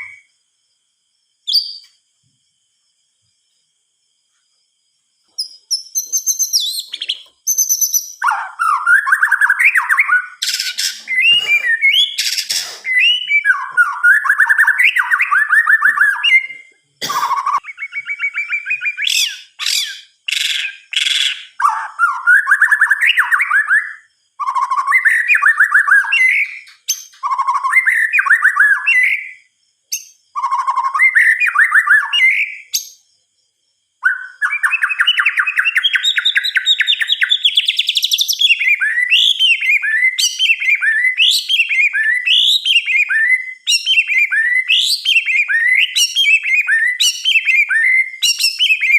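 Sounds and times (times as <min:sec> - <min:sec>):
bird singing trilled whistles: 0:00.0 - 0:00.3, 0:01.5 - 0:02.0, 0:05.3 - 0:33.1, 0:34.0 - 0:48.9
harsh rasping bird notes: 0:10.4 - 0:13.4.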